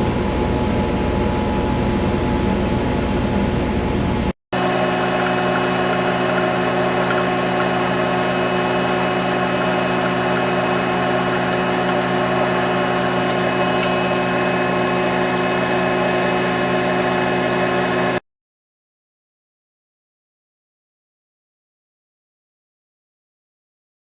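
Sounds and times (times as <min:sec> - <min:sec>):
welding arc buzzing: 0:04.6 - 0:18.2.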